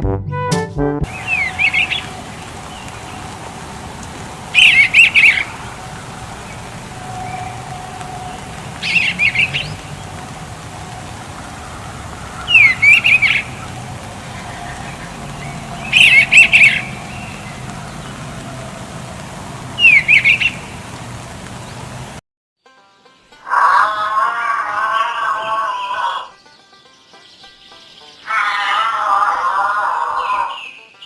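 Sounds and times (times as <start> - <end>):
bird chirping: 1.1 - 22.0, 25.9 - 28.8
background hiss: 1.1 - 22.2.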